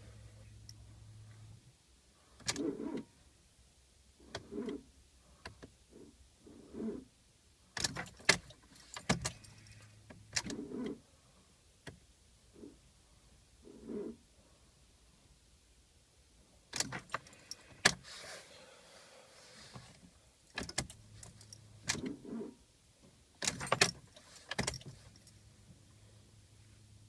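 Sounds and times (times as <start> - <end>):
car keys jangling: 7.8 - 10.8, 16.7 - 18.1, 20.5 - 22.1, 23.4 - 25.4.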